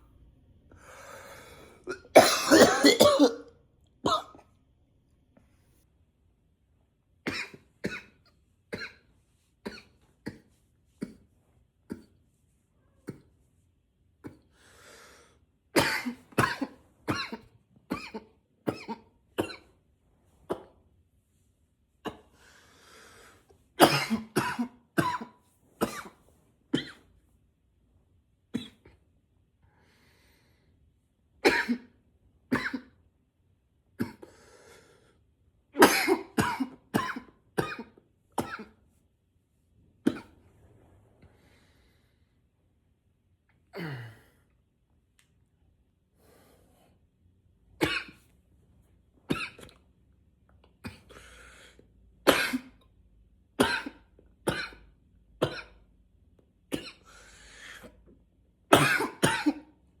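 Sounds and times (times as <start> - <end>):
man coughing: 1.9 - 3.5, 4.1 - 4.4, 15.8 - 19.6, 23.8 - 26.1, 35.8 - 38.7, 43.8 - 44.3, 52.3 - 52.8, 58.7 - 59.6.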